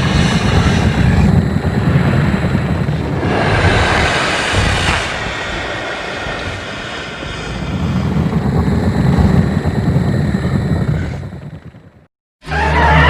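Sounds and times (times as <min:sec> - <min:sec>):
faint high screech: 0:12.4 - 0:13.0.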